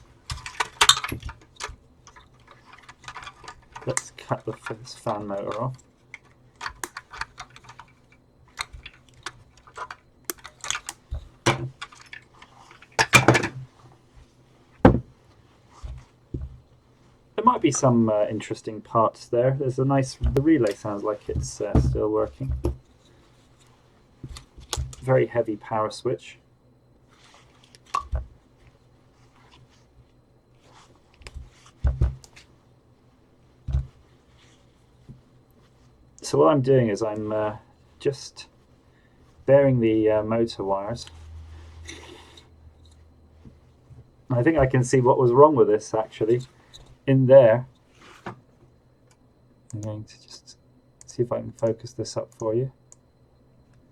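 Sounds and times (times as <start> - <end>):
plastic clicks and clattering: 0.2 - 13.6.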